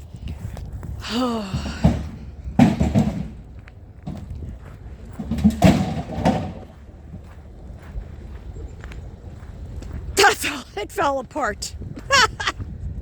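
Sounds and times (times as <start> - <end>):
scrap metal clanking: 5.1 - 6.8.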